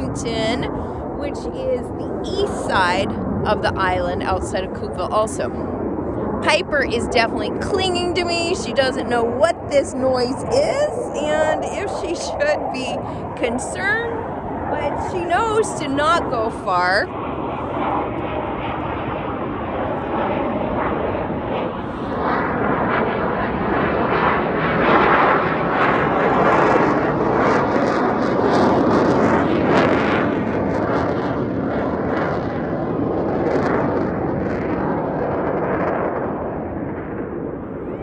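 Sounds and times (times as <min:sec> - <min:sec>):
military jet roaring overhead: 0:00.0 - 0:38.0.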